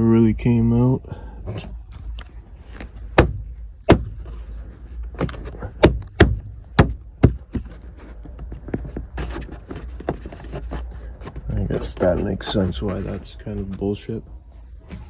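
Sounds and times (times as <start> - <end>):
car parts knocking and clicking: 1.9 - 15.0.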